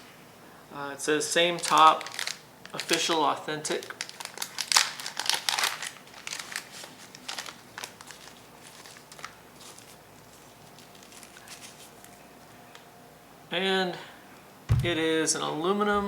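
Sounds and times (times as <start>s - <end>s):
packaging crinkling: 1.5s - 12.3s.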